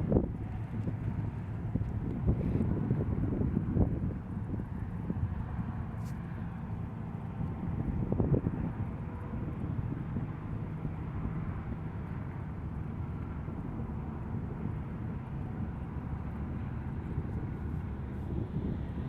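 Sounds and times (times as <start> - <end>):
helicopter engine and rotors: 0.0 - 19.0.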